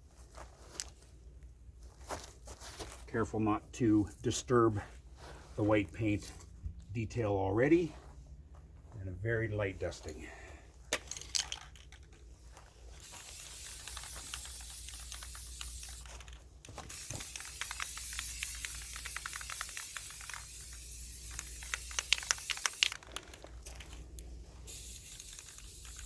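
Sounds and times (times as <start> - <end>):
crackling clicks: 13.0 - 26.0
spray paint can hissing: 13.0 - 26.0.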